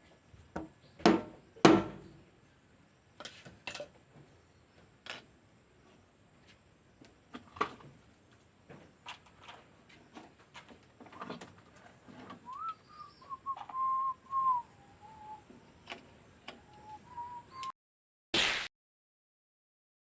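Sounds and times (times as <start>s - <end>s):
whistle-like tone falling: 12.5s - 15.4s, 16.7s - 17.7s.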